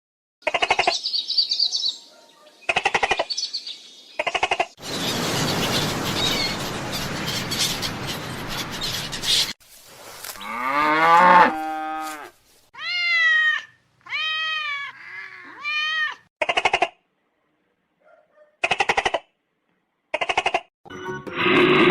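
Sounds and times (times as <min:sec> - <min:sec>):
cat meowing: 0:12.8 - 0:16.3.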